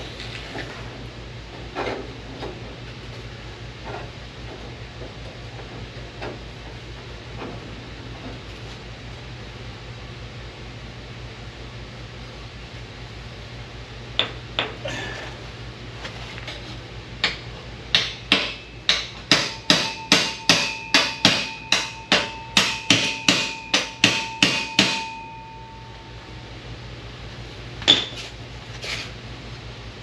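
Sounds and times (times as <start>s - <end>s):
hammer striking sheet steel: 17.9s - 25.8s.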